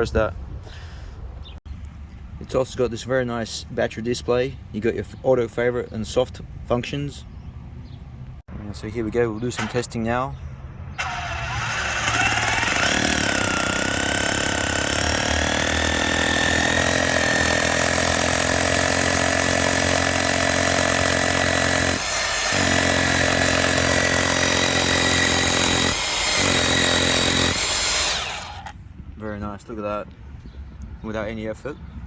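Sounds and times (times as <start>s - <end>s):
rotary hammer drilling into concrete: 11.0s - 28.8s.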